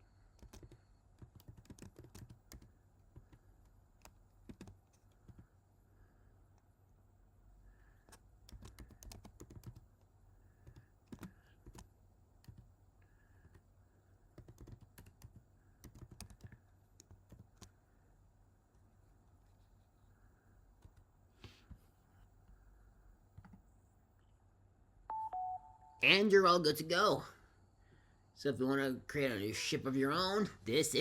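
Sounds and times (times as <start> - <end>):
faint low hum: 0.0 - 31.0
keyboard typing and clicking: 0.3 - 5.5, 8.1 - 12.7, 14.3 - 17.7, 23.4 - 23.6.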